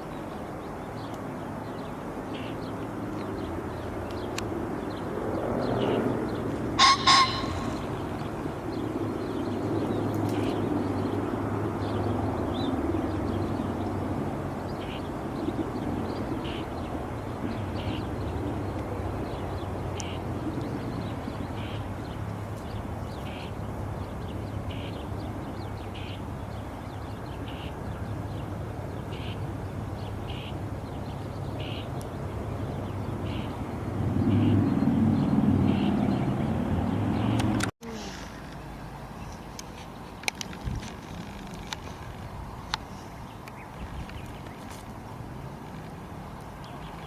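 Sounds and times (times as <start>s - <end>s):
bird short calls: 6.8s - 8.2s.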